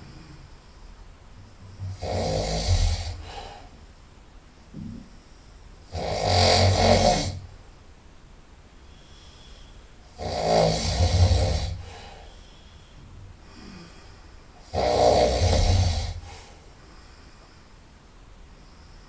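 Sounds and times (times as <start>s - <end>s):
quiet breaths: 0.0s - 6.0s, 7.2s - 19.0s
person snoring: 1.8s - 3.6s, 5.9s - 7.4s, 10.1s - 12.3s, 13.5s - 16.6s.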